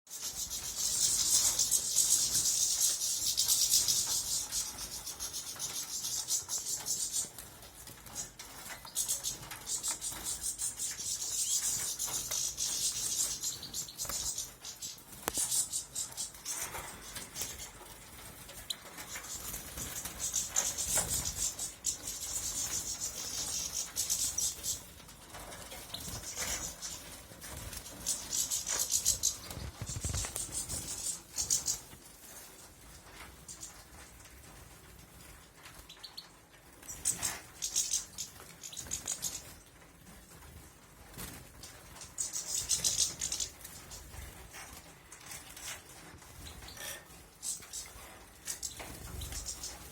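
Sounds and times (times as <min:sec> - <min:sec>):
goldfinch twittering song: 0:00.1 - 0:31.9, 0:35.9 - 0:39.6, 0:41.6 - 0:44.3, 0:46.4 - 0:49.9.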